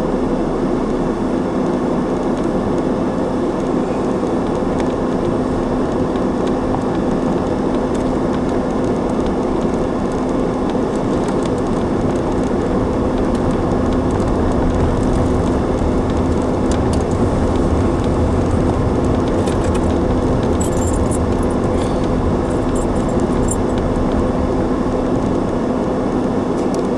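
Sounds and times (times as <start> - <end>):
car engine and tyre noise: 0.0 - 26.9
light high rattles: 18.0 - 24.2.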